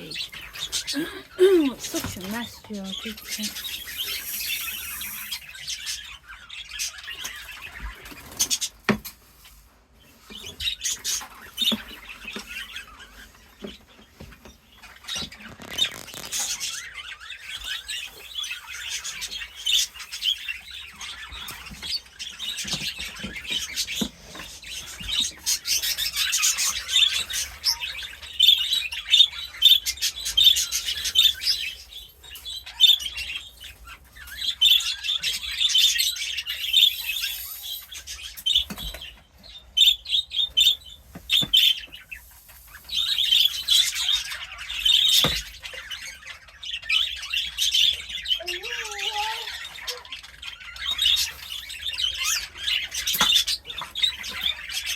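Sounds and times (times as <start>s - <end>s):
small birds chirping: 0.0s - 54.9s
rustles and clicks: 15.1s - 16.7s.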